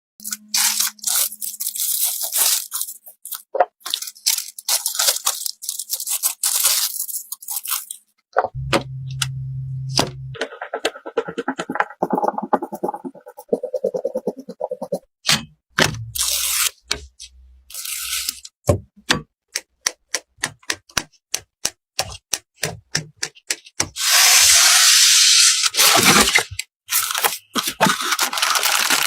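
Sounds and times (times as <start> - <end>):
packaging crinkling and scraping: 0.2 - 8.1, 25.6 - 29.0
low steady hum: 8.6 - 10.4.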